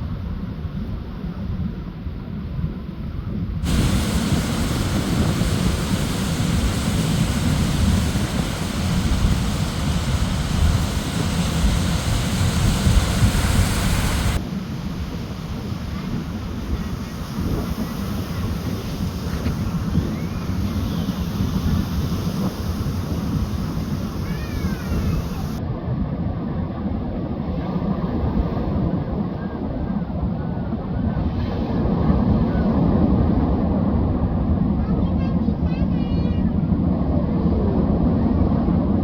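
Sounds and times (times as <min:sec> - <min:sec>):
wind on microphone: 0:00.0 - 0:35.1, 0:35.8 - 0:39.0
ocean surf washing on beach: 0:03.6 - 0:25.6.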